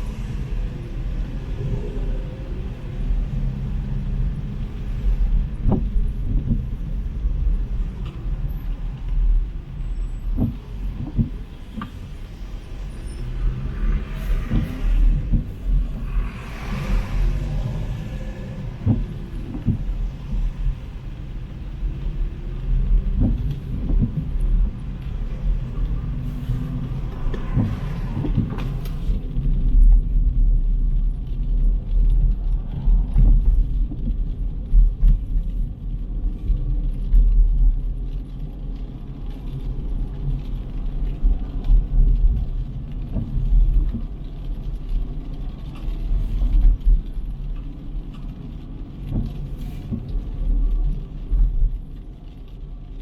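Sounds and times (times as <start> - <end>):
cars passing: 0.0 - 30.7.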